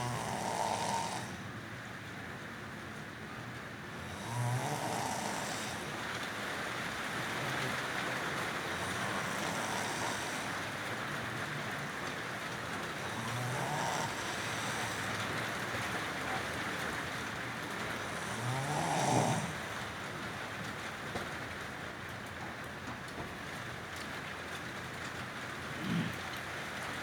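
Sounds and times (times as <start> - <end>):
person snoring: 0.0 - 1.5, 4.0 - 6.3, 8.5 - 11.0, 12.9 - 15.4, 18.0 - 19.7, 25.8 - 26.2
steady background hiss: 0.0 - 1.8, 3.6 - 20.7.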